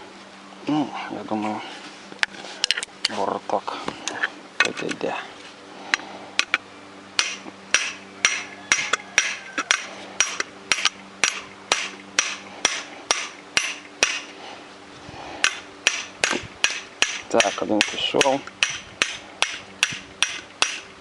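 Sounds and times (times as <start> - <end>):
hammer striking metal: 7.2 - 14.3, 15.4 - 20.9.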